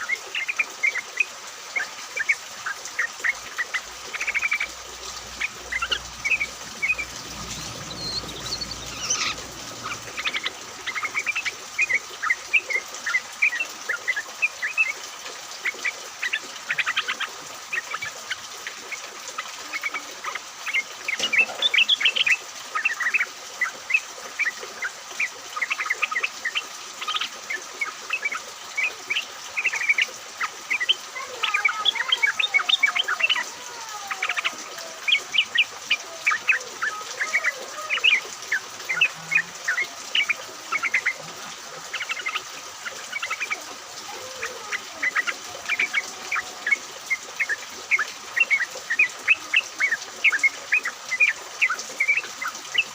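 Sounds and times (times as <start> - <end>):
birds chattering and singing: 0.0 - 15.0, 15.6 - 52.9
lower gliding bird notes: 5.3 - 11.2.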